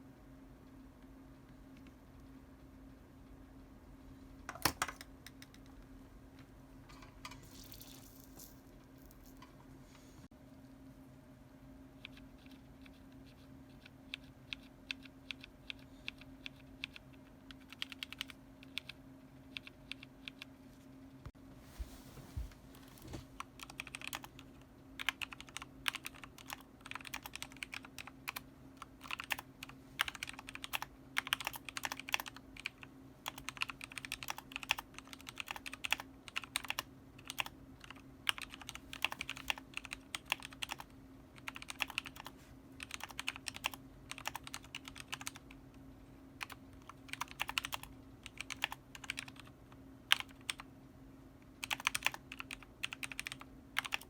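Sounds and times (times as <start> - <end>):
mechanical keyboard typing: 4.5 - 5.7, 12.0 - 20.5, 23.4 - 45.6, 46.4 - 49.5, 50.1 - 50.7, 51.6 - 54.0.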